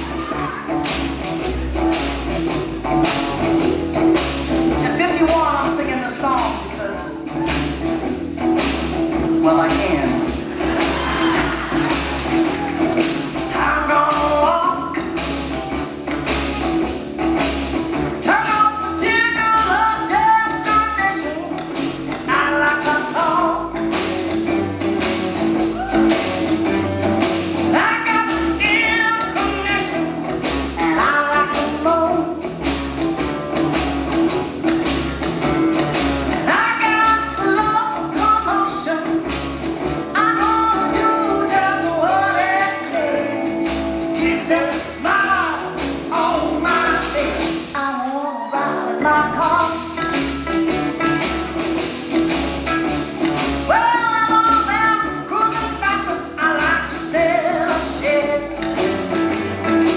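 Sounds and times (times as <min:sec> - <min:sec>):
live band music: 0:00.0 - 0:59.9
woman singing: 0:04.8 - 0:07.3, 0:09.3 - 0:10.3, 0:13.5 - 0:15.1, 0:18.2 - 0:23.7, 0:27.6 - 0:32.5, 0:36.4 - 0:39.3, 0:40.1 - 0:50.0, 0:53.7 - 0:59.0.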